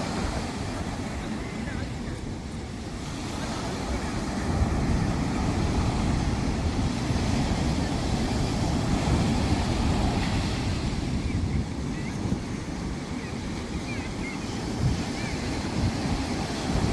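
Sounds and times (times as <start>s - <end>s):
sea waves washing onto beach: 0.0s - 16.9s
wind buffeting microphone: 0.0s - 16.9s.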